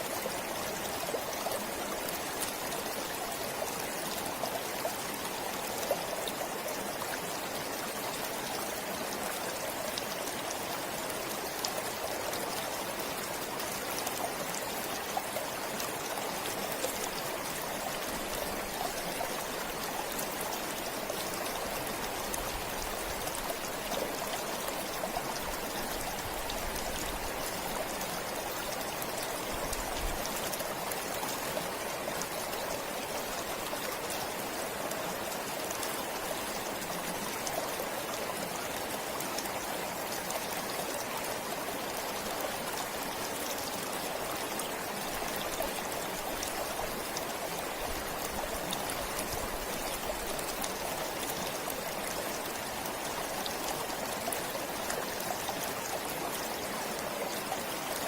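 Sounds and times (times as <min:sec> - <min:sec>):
stream flowing: 0:00.0 - 0:58.0.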